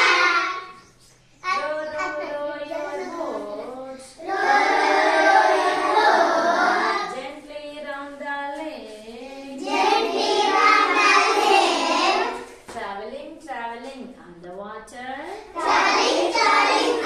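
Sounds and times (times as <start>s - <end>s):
children singing together: 0.0s - 1.0s, 1.6s - 7.2s, 9.2s - 12.6s, 15.5s - 17.0s.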